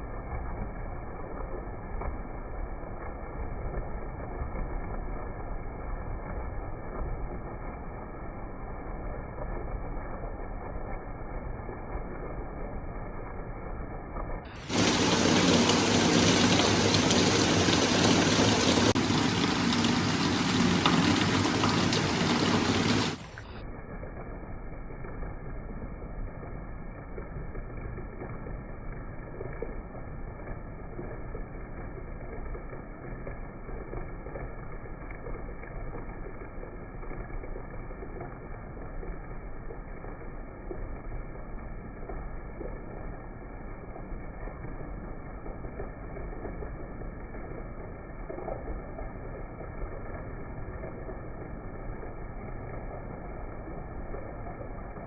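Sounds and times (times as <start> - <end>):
heavy rain hissing: 14.6 - 23.6.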